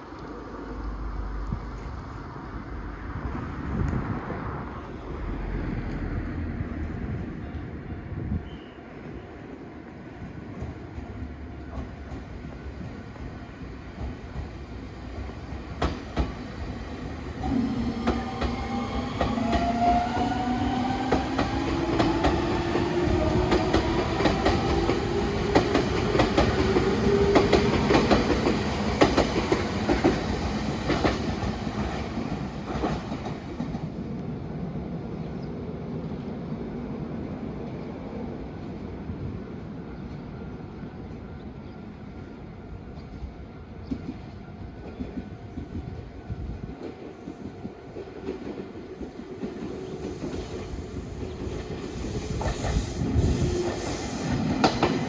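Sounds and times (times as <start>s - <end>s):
train wheels clacking over rail joints: 51.5s - 55.0s.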